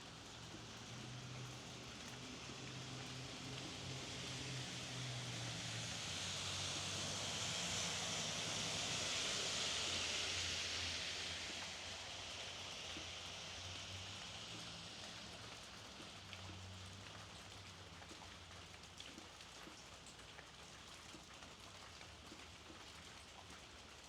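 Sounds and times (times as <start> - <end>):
tyre hiss on wet road: 0.0 - 18.9
steady rainfall: 0.0 - 24.0.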